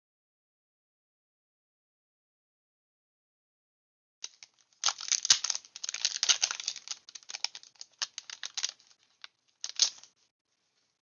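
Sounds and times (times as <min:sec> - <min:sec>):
foil wrapper crinkling: 0:04.3 - 0:10.2.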